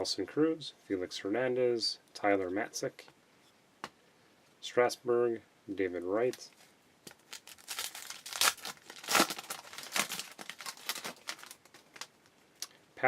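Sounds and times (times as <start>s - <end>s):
foil wrapper crinkling and tearing: 7.1s - 12.3s.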